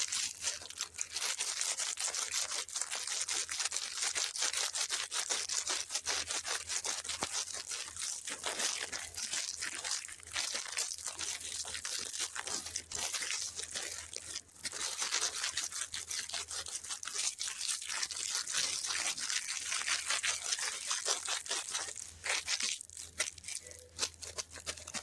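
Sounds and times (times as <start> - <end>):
packaging crinkling and tearing: 0.0 - 25.0.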